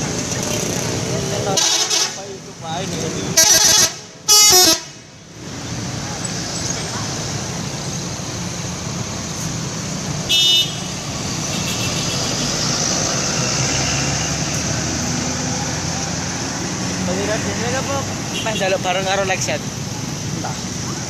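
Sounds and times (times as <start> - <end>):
road traffic and engines: 0.0 - 21.0
high-pitched horn toot: 3.4 - 4.9.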